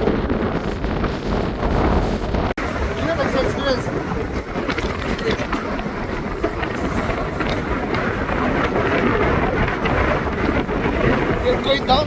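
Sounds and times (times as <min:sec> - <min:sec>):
strong wind buffeting microphone: 0:00.0 - 0:12.0.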